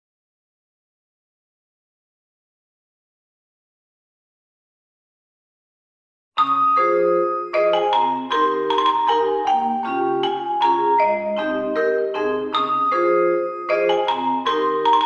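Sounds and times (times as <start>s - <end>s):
mallet instrument melody: 6.4s - 15.0s.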